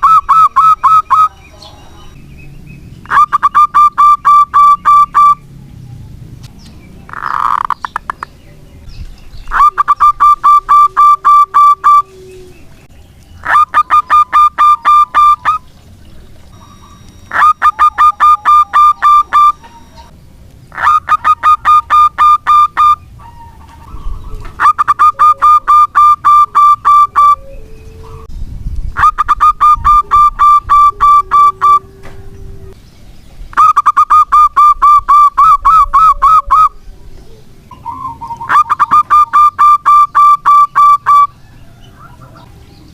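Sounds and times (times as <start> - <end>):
softer lower bird calls: 0.0 - 5.6, 6.6 - 32.8, 33.5 - 42.9
dove cooing: 3.1 - 6.1, 9.5 - 20.1, 20.7 - 28.3, 29.0 - 32.8, 33.6 - 42.9.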